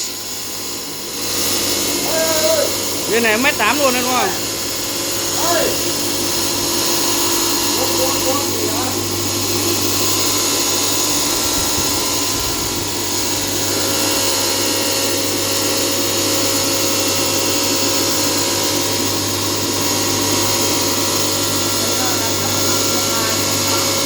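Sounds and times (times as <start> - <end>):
low motor hum: 0.0 - 24.0.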